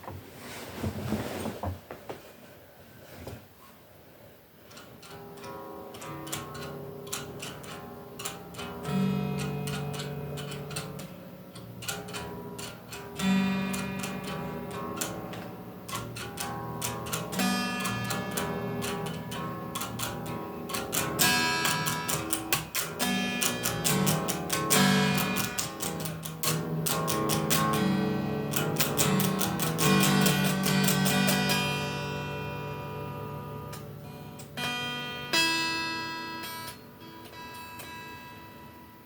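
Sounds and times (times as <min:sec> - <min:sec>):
guitar strumming chords: 0:04.7 - 0:39.0.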